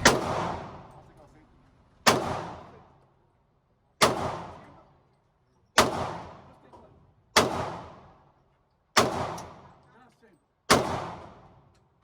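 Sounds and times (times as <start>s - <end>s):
gunshots with ringing tail: 0.0s - 1.1s, 2.0s - 2.8s.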